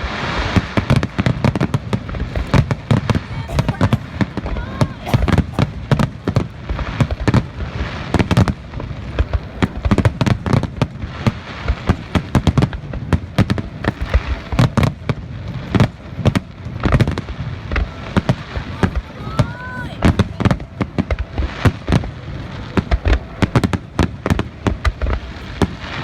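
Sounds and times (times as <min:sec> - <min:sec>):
fireworks shells bursting: 0:00.3 - 0:12.6.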